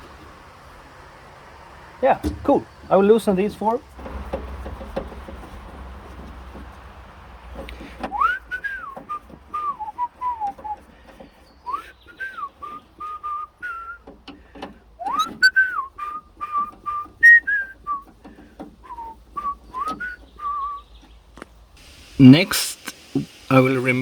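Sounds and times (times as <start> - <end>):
hand tools clicking on door hardware: 2.2 - 2.9, 14.0 - 15.8
person whistling a tune: 8.1 - 10.8, 11.7 - 14.1, 15.0 - 18.1, 18.8 - 20.9.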